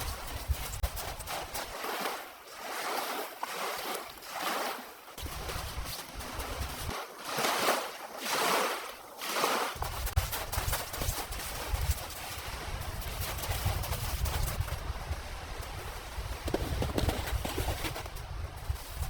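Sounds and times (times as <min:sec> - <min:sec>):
wind buffeting microphone: 0:09.8 - 0:19.0
blizzard wind gusting: 0:11.8 - 0:19.0.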